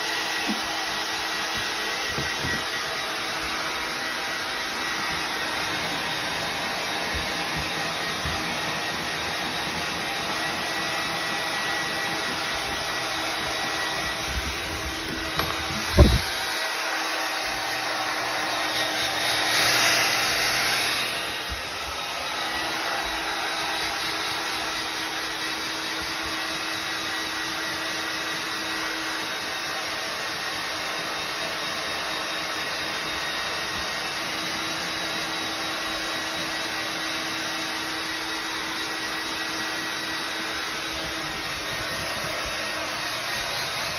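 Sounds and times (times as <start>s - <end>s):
hair dryer blowing: 0.0s - 43.9s.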